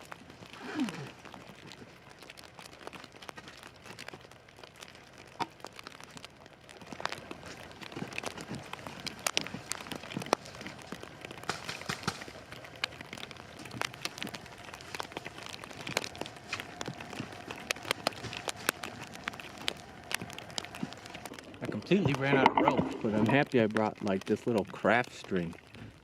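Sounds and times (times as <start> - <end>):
plastic wrap crinkling: 0.0 - 26.0.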